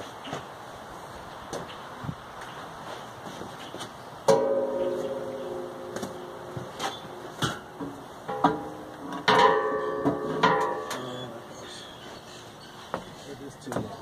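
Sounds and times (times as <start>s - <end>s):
acoustic guitar music: 4.3s - 12.0s.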